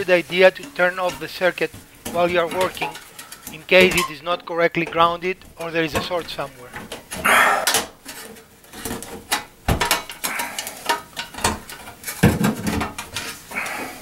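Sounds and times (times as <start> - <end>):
metal scraping: 0.0 - 14.0.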